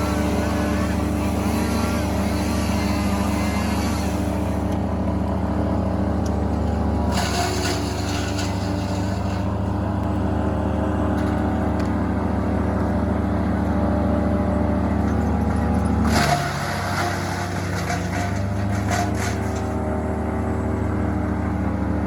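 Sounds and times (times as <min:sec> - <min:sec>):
large engine running: 0:00.0 - 0:22.0.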